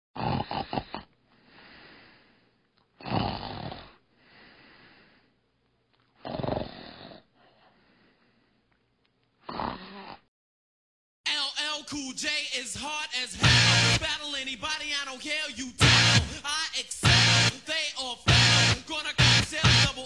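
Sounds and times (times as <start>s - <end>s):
person snoring: 0.2s - 2.2s, 3.0s - 4.8s, 6.2s - 7.8s, 9.4s - 10.3s, 15.7s - 20.0s.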